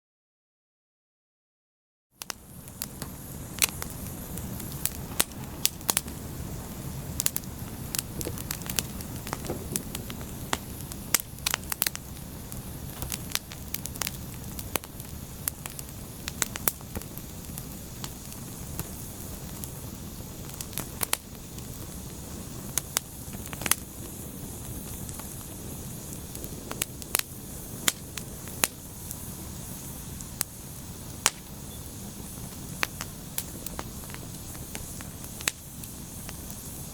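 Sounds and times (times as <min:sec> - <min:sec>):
burning wood crackling and popping: 0:02.2 - 0:36.9
wood fire rumbling and hissing: 0:02.2 - 0:36.9.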